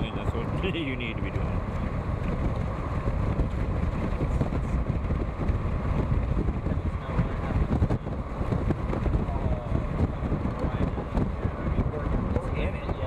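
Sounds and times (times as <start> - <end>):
vehicle driving on snowy road: 0.0 - 13.0.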